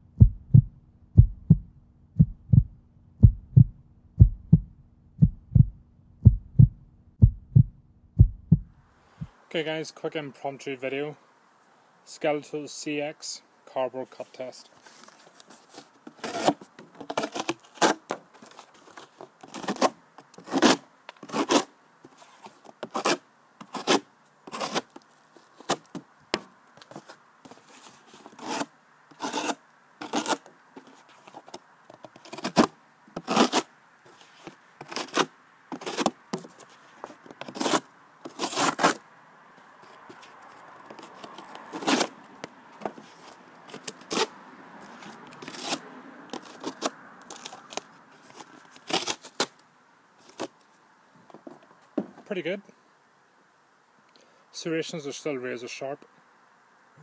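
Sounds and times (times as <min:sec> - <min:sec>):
knife slicing cardboard: 0:16.1 - 0:18.1, 0:19.5 - 0:21.7, 0:22.8 - 0:24.9, 0:28.3 - 0:30.4, 0:32.2 - 0:33.7, 0:34.8 - 0:36.5, 0:37.5 - 0:39.0.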